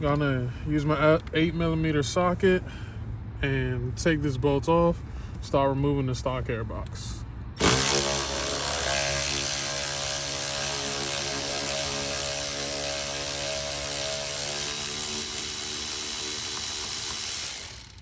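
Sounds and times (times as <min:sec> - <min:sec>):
electric ratchet motor running: 0:07.6 - 0:18.0.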